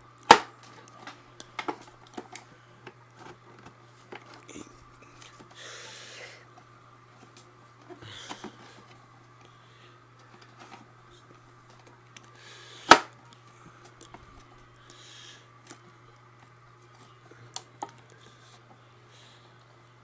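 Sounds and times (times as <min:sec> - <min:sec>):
steady low hum: 0:00.0 - 0:20.0
vacuum parts clicking and tapping: 0:00.2 - 0:04.5.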